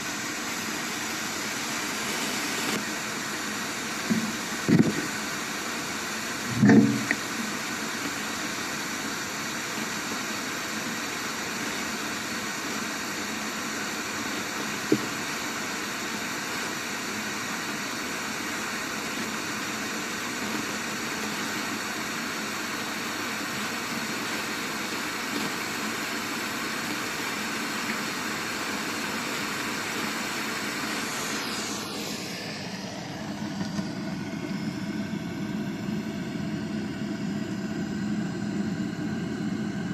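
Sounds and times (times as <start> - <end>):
faint hum: 0.0 - 39.9
steady rushing noise: 0.0 - 39.9
thump: 6.5 - 7.2.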